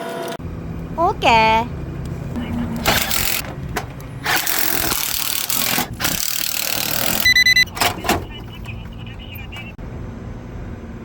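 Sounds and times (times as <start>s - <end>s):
rapid electronic beeping: 4.2s - 9.8s.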